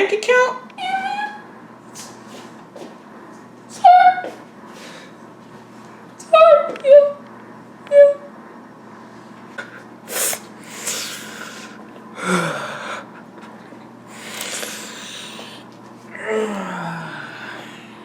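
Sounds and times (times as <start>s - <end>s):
person breathing heavily and sighing: 10.7s - 13.2s, 14.1s - 18.0s
person groaning low: 12.2s - 13.0s, 16.1s - 18.0s.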